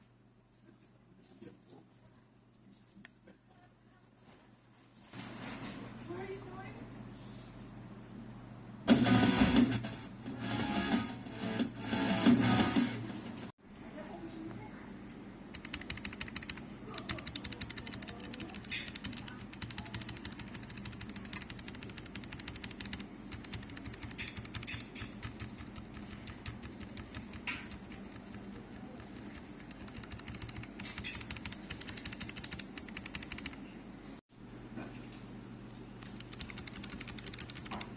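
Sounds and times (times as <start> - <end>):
mechanical keyboard key clacks: 15.5 - 33.6, 36.2 - 37.9.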